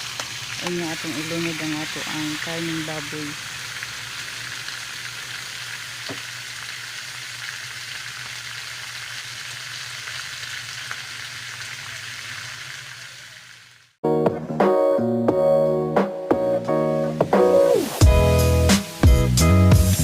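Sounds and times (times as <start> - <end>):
meat sizzling in hot oil: 0.0 - 14.0.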